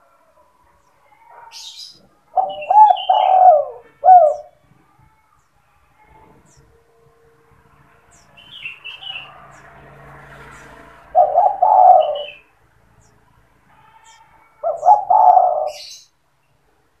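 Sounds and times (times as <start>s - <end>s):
small birds chirping: 0.6s - 6.8s, 8.0s - 16.6s
dove cooing: 1.6s - 4.6s, 11.1s - 12.5s, 13.8s - 16.1s.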